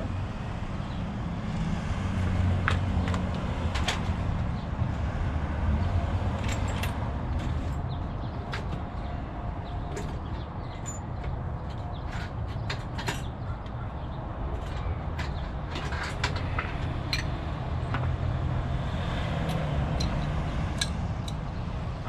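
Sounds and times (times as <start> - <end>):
tools clicking and clinking: 14.6 - 18.1, 19.5 - 21.6.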